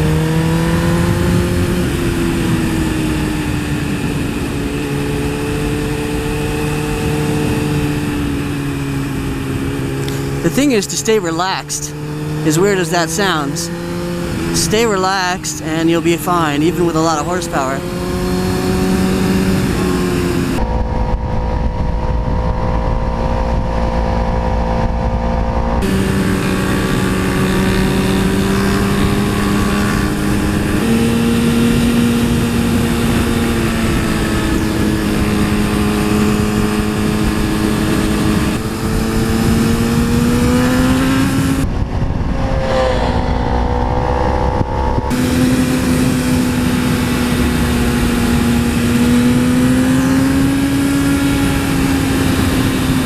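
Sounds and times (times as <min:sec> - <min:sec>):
motorcycle engine running: 0:17.8 - 0:53.0.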